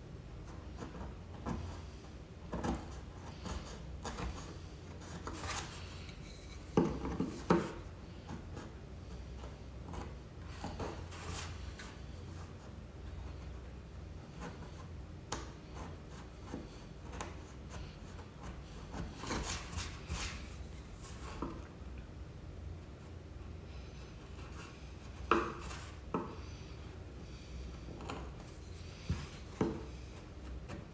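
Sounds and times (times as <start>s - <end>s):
chisel scraping wood: 2.5s - 7.9s, 18.9s - 21.7s.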